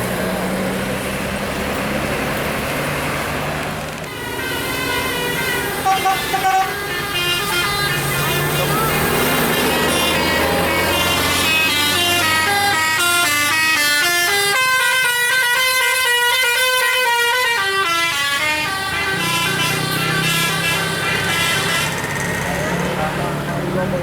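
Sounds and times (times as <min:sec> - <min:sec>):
multi-tone air horn melody: 0:04.1 - 0:22.2.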